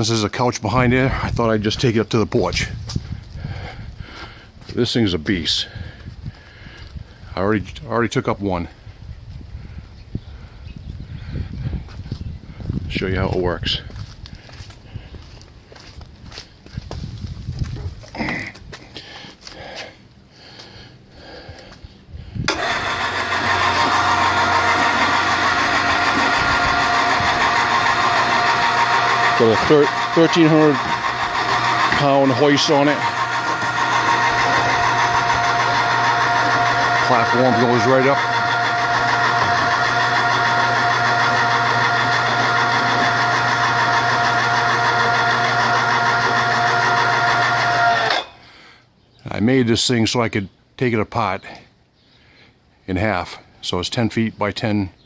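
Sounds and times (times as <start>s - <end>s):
electric hoist motor humming: 22.5s - 48.4s.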